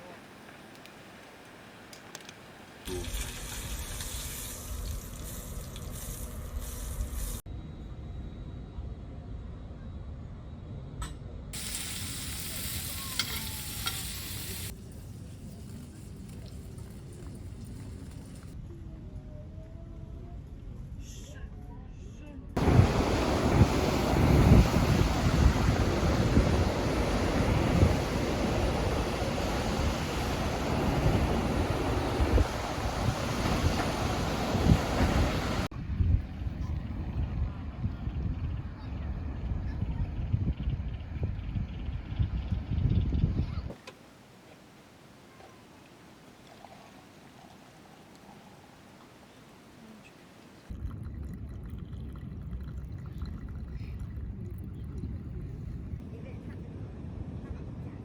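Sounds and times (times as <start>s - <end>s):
ocean surf: 0.0s - 3.4s, 22.6s - 35.7s
wind buffeting microphone: 22.6s - 43.8s.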